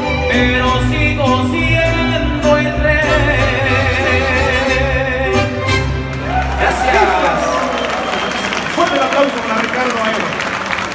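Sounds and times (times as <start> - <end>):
man singing with vibrato: 0.0 - 6.0
steady bass: 0.0 - 7.5.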